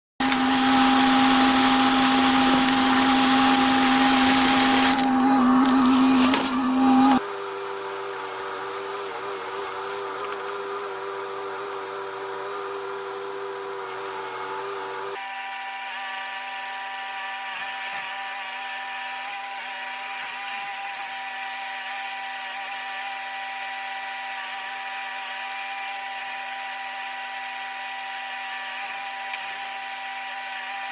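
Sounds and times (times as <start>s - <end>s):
machine high-pitched whine: 0.2s - 7.6s.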